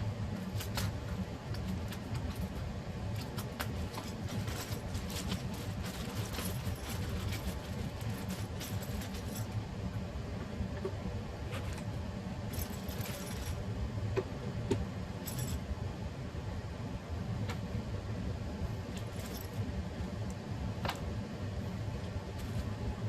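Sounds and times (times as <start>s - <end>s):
steady low hum: 0.0s - 23.0s
metal hardware clinking and rattling: 3.2s - 9.6s, 12.5s - 13.6s.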